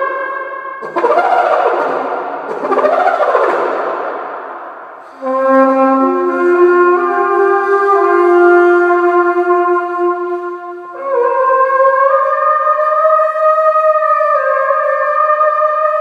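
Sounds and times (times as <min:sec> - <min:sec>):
long held trumpet notes: 0:05.0 - 0:13.4.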